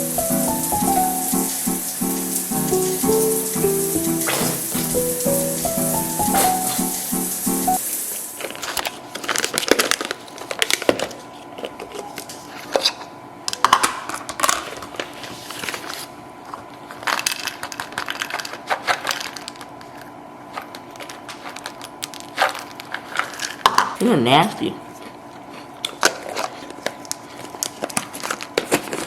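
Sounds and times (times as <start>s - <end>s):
small hard objects clicking and clattering: 17.0s - 20.1s.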